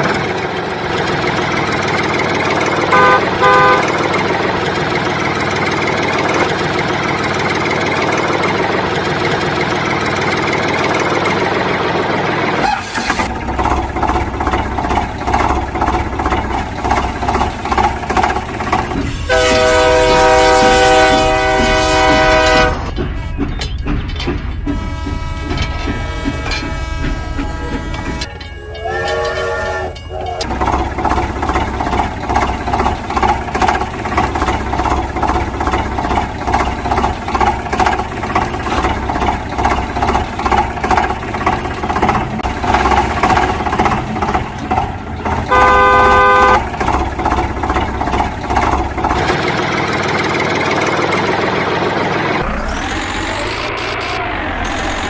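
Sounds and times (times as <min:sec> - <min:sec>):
cartoon truck engine chugging: 0:00.0 - 0:55.0
horn honk: 0:02.9 - 0:04.1, 0:19.3 - 0:30.4, 0:45.4 - 0:46.8
short rising tone: 0:52.4 - 0:55.0.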